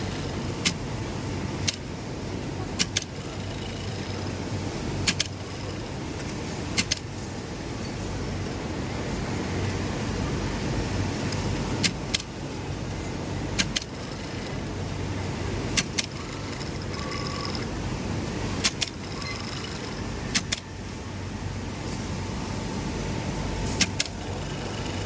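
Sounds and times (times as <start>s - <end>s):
sharp clicks in pairs: 2.8s - 3.2s, 13.6s - 14.0s, 18.6s - 20.6s
sewing machines humming: 13.6s - 20.6s, 23.2s - 25.0s.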